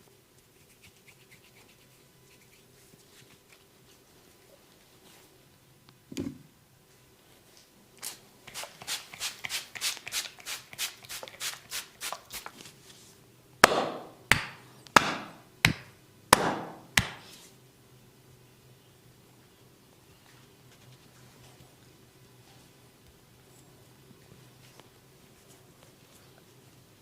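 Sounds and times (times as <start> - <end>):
hands slapping body: 13.6 - 17.2.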